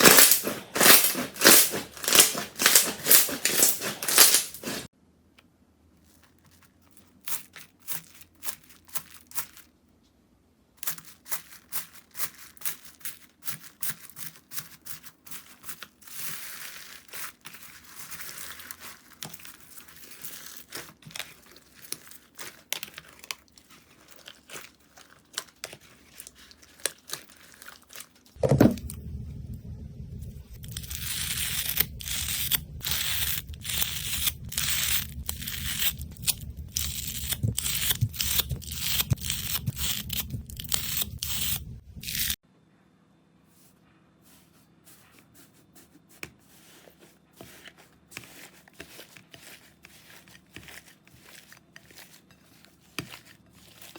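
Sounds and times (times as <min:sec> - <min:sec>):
slime crackling and tearing: 0:00.0 - 0:04.9, 0:16.2 - 0:28.3, 0:30.6 - 0:42.4
slime squishing: 0:00.0 - 0:04.9, 0:16.1 - 0:42.4, 0:46.4 - 0:53.9.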